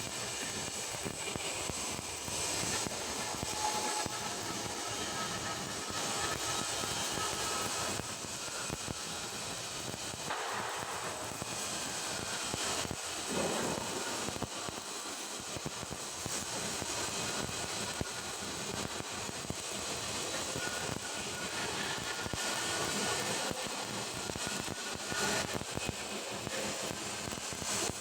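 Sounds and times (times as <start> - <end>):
welding arc crackling hiss: 0.1 - 28.0.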